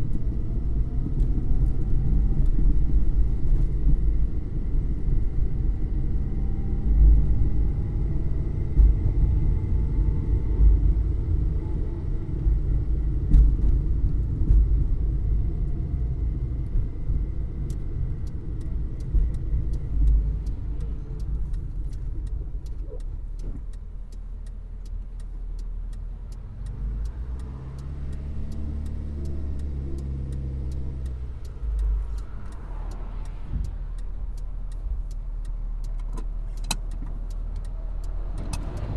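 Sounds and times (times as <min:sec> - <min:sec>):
car engine rumbling: 0:00.0 - 0:38.9
faint ticks: 0:17.6 - 0:38.9.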